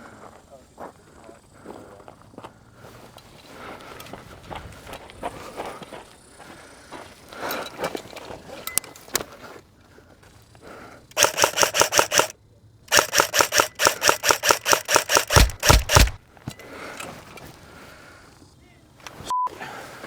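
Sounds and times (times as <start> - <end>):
airsoft rifle automatic fire: 11.1 - 12.3, 12.9 - 16.2
rustling and movement clicks: 11.1 - 12.3, 12.9 - 17.6.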